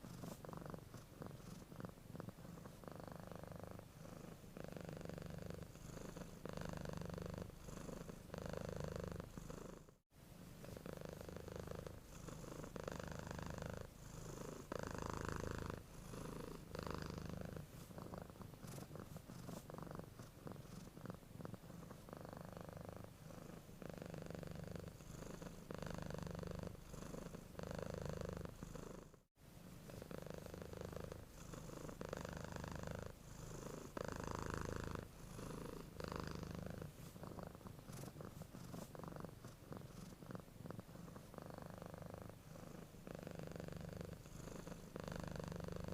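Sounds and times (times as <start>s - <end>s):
cat purring: 0.0s - 45.9s.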